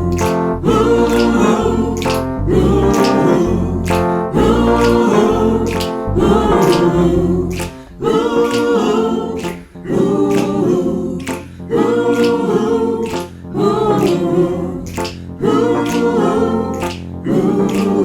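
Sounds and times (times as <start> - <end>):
a cappella group singing chords: 0.0 - 18.0
finger snaps: 1.1 - 4.2, 4.8 - 8.8, 11.2 - 11.5, 12.2 - 13.4, 14.9 - 15.3, 16.8 - 18.0.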